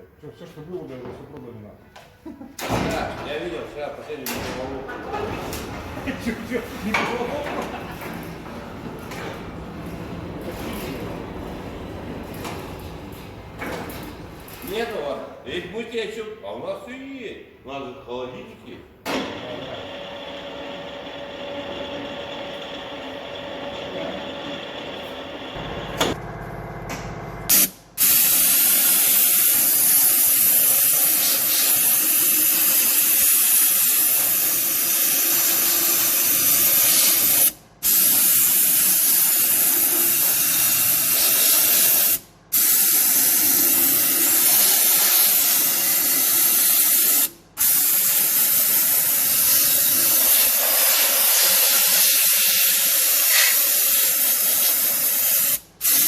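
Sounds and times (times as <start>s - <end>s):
pneumatic tool air hiss: 27.5s - 56.0s.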